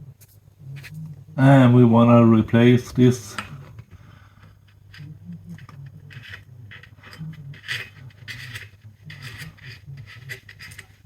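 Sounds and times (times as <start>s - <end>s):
drain plug scraping and clicking: 2.9s - 11.0s.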